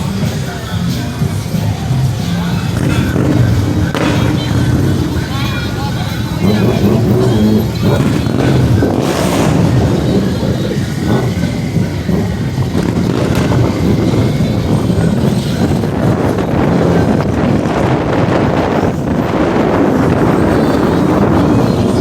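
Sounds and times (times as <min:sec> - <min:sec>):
passing vehicle traffic rumble: 0:00.0 - 0:22.0
wind buffeting microphone: 0:01.2 - 0:22.0.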